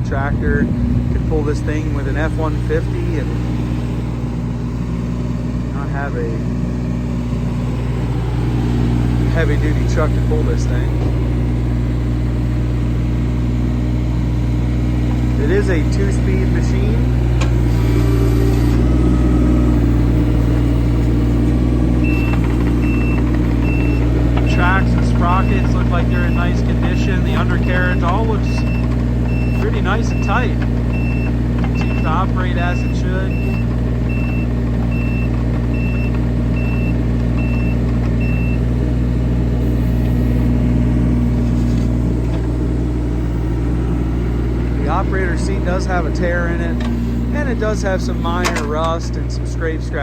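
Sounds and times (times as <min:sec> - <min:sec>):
excavator diesel engine running: 0:00.0 - 0:50.0
travel alarm beeps: 0:22.0 - 0:24.6, 0:27.4 - 0:38.6.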